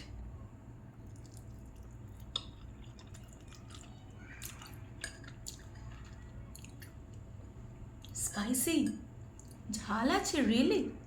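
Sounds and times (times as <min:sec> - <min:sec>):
person chewing noodles: 0:01.0 - 0:07.2.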